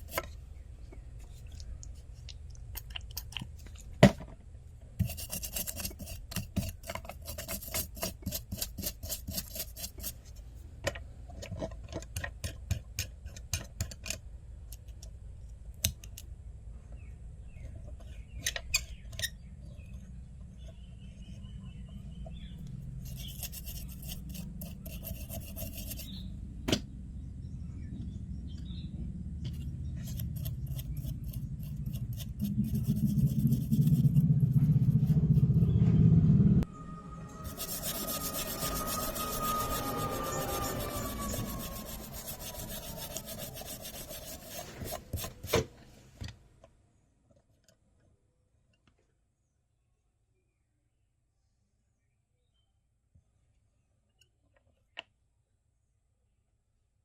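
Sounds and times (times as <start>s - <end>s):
hand tool scraping: 0.0s - 0.4s, 5.0s - 10.4s, 23.0s - 26.2s, 29.5s - 35.8s, 37.4s - 45.7s.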